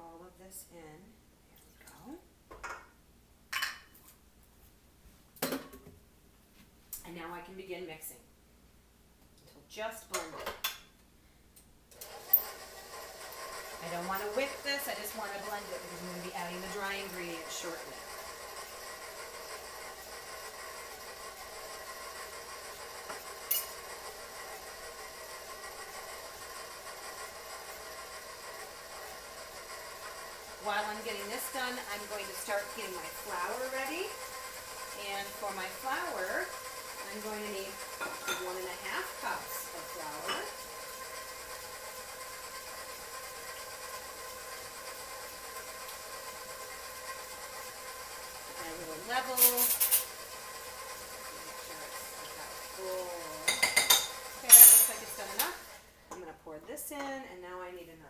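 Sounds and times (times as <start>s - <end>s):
electric mixer running: 12.0s - 38.0s, 38.6s - 53.5s.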